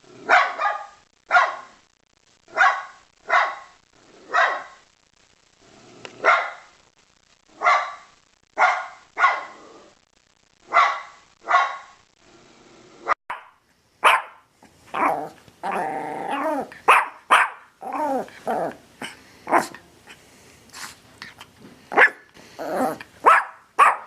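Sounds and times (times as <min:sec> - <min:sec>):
dog barking: 0:00.2 - 0:01.8, 0:02.5 - 0:04.8, 0:06.2 - 0:06.7, 0:07.6 - 0:09.6, 0:10.7 - 0:12.0, 0:13.3 - 0:15.3, 0:16.3 - 0:17.7, 0:19.0 - 0:19.8, 0:21.9 - 0:22.3, 0:23.2 - 0:24.0.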